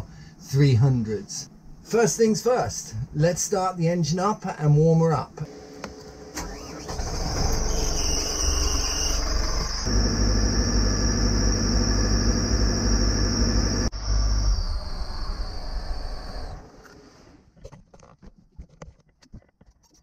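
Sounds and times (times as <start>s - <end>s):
diesel engine idling: 6.4s - 13.9s
high-pitched whine: 7.4s - 16.8s.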